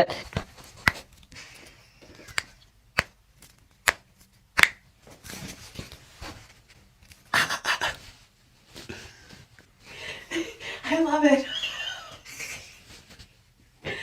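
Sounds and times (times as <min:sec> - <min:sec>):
rubbing and handling of clothing: 0:04.2 - 0:13.8
rustling: 0:05.0 - 0:07.3, 0:07.9 - 0:10.0, 0:12.3 - 0:13.7.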